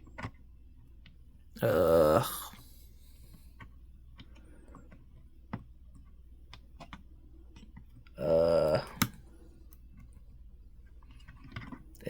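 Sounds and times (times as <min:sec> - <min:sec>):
short human vocal sound: 0:01.6 - 0:02.7, 0:08.2 - 0:09.0.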